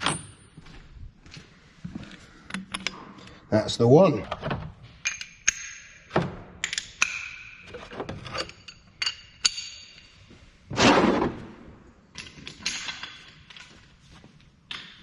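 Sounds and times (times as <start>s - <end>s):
metal tools clinking and clanking: 0.0s - 0.8s, 5.0s - 5.6s, 6.6s - 10.3s, 12.1s - 14.0s.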